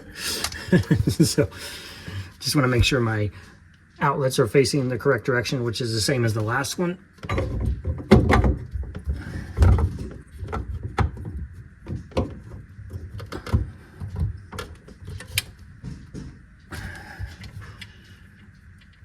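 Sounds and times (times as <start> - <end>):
knocks and clunks of fittings: 7.2 - 16.3.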